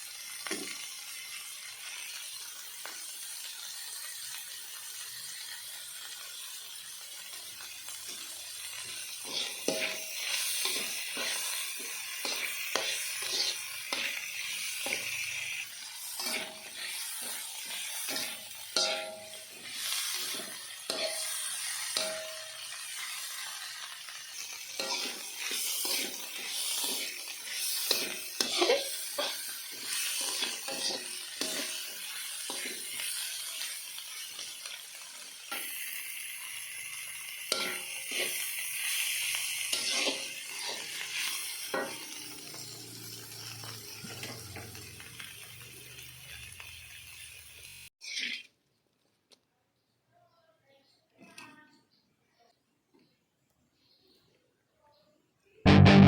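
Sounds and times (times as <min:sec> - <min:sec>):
food sizzling in a metal pan: 0:00.0 - 0:48.5, 0:55.7 - 0:56.0
spatula scraping and knocking pan: 0:09.2 - 0:22.6, 0:24.8 - 0:33.1, 0:37.5 - 0:42.7.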